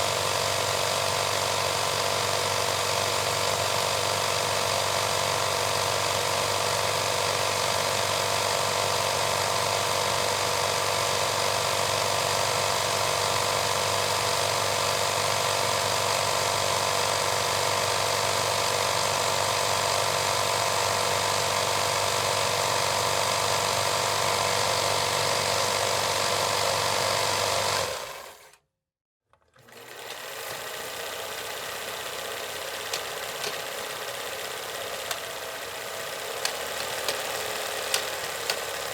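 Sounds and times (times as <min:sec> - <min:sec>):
film projector rattling: 0:29.7 - 0:38.9.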